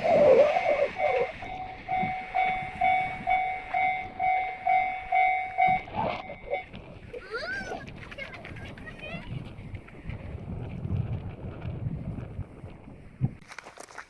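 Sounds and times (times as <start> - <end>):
level-crossing warning bell: 0.0 - 6.8.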